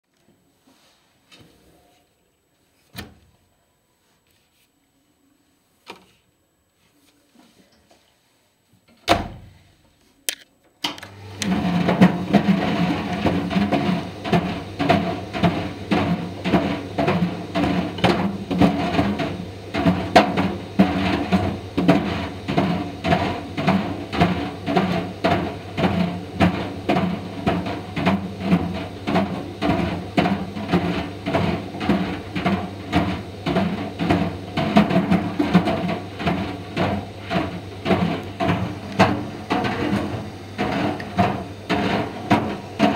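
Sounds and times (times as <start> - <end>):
tumble dryer motor hum: 11.0 - 42.9
dryer balls knocking against drum: 11.4 - 42.9.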